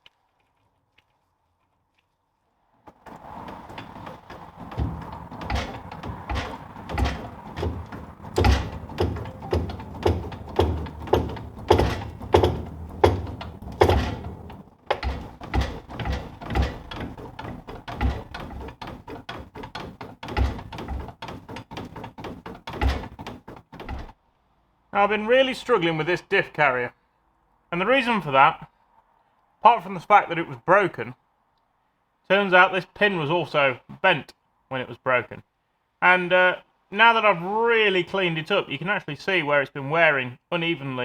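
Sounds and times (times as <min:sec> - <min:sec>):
hammer knocking on metal: 0:03.1 - 0:24.1.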